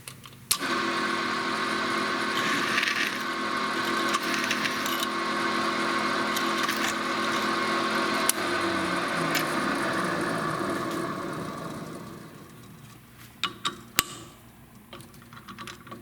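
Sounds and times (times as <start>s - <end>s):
drill press drilling metal: 0.6s - 12.9s.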